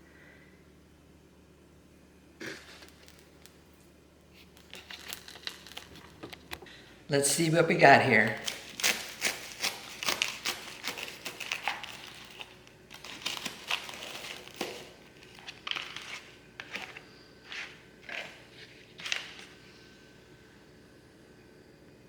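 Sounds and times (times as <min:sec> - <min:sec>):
toasted sandwich crunching: 0:02.4 - 0:06.6, 0:08.3 - 0:19.6.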